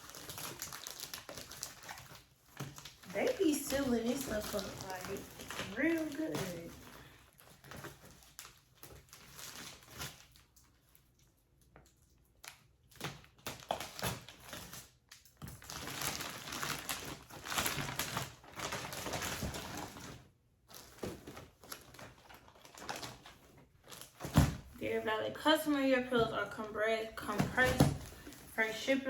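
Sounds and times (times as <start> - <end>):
plastic packaging crackling: 0.0 - 11.2, 12.4 - 29.0.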